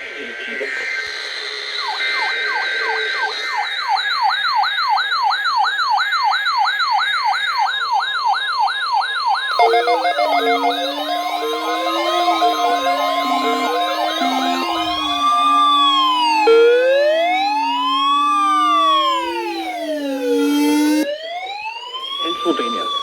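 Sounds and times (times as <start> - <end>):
low steady tone: 9.6 - 21.0
sirens yelping: 9.6 - 23.0.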